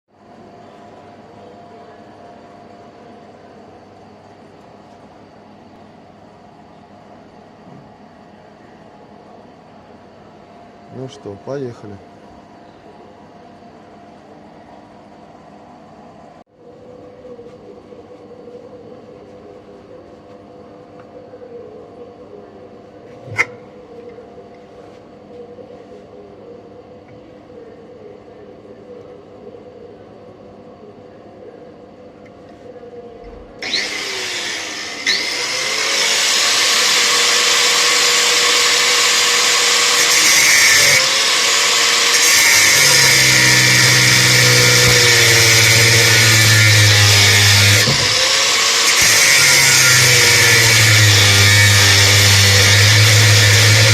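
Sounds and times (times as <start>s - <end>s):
power tool cutting metal: 33.6s - 53.9s.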